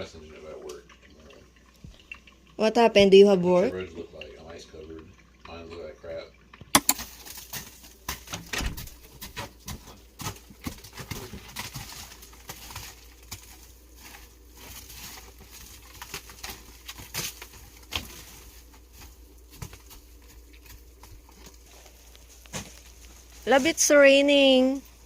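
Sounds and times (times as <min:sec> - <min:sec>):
sleet pattering: 0:06.9 - 0:25.0.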